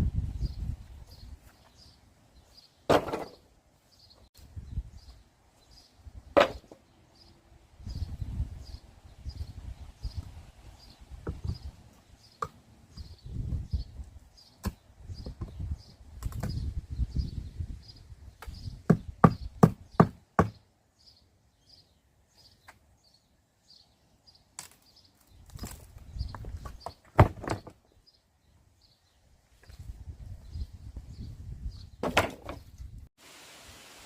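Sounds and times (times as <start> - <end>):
small bird chirping: 6.8 - 20.0
sharp knocks on wood: 18.9 - 20.6.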